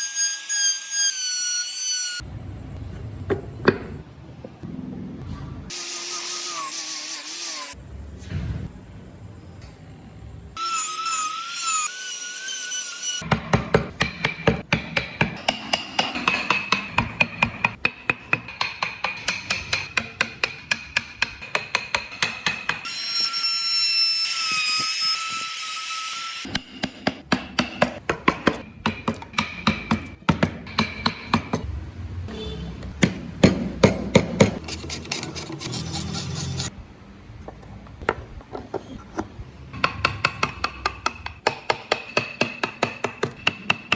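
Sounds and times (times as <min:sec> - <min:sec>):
mallet striking chisel into wood: 0:13.3 - 0:22.8, 0:26.5 - 0:31.6, 0:39.8 - 0:43.9.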